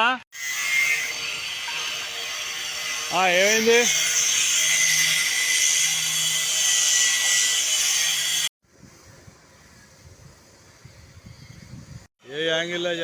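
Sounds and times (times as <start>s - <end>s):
harsh hiss from steel cutting: 0.4s - 8.5s.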